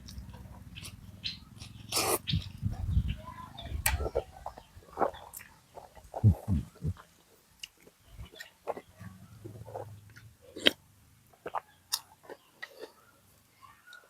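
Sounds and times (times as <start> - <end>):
person chewing food: 3.8 - 8.9, 9.5 - 13.1.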